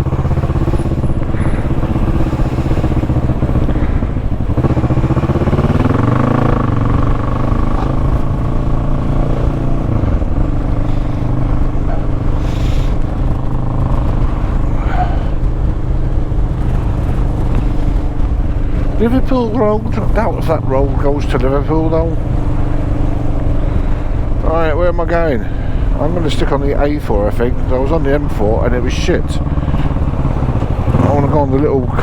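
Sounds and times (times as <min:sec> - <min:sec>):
motorcycle engine revving: 0:00.0 - 0:32.0.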